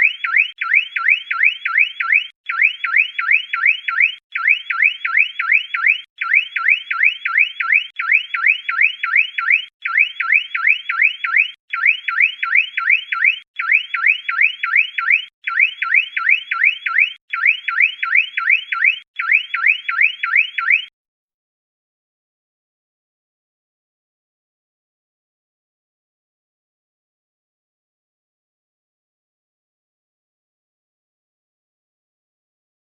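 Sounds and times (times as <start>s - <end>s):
car alarm siren whooping: 0.0s - 20.9s.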